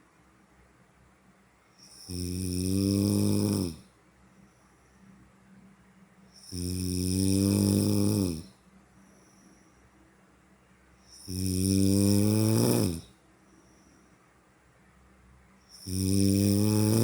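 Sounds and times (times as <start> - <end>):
person snoring: 1.9 - 3.9, 6.4 - 8.5, 11.2 - 13.1, 15.8 - 17.0.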